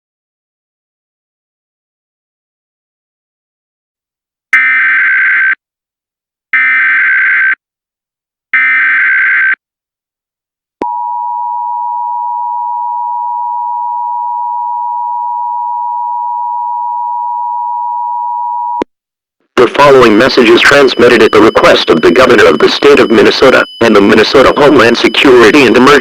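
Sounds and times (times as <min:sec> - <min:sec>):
data tone bursts: 0:19.6 - 0:26.0
steady two-tone attention signal: 0:19.6 - 0:26.0.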